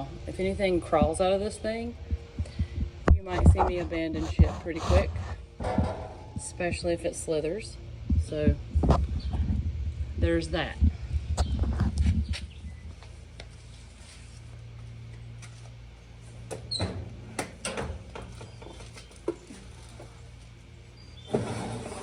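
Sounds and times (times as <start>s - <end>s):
steady low hum: 0.0s - 22.0s
sheet metal rattle: 4.2s - 6.9s.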